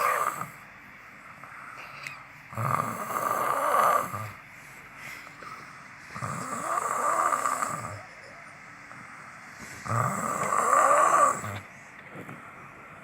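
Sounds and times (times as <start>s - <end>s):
person snoring: 2.5s - 4.4s, 5.5s - 8.1s, 9.6s - 11.7s.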